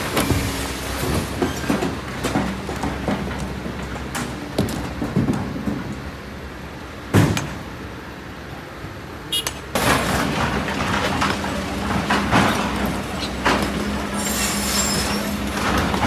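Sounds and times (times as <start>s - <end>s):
excavator engine hum: 9.3s - 16.0s
rattling and crunching stones: 9.8s - 16.0s.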